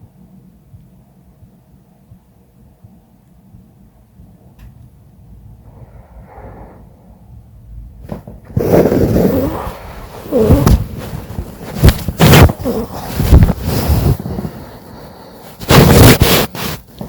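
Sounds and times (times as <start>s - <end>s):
person breathing quietly: 5.5s - 7.7s, 8.9s - 17.0s
loud rough snoring: 8.6s - 10.9s.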